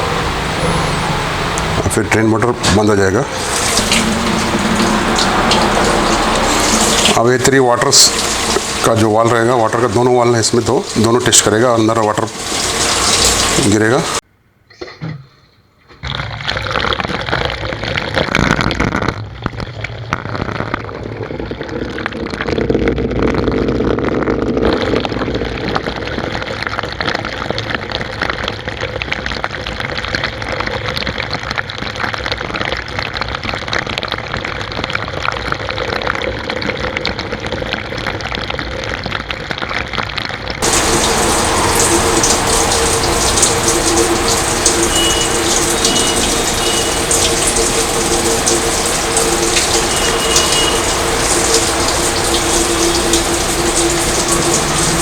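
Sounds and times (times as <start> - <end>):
water gushing into washing machine: 0.0 - 14.2, 40.6 - 55.0.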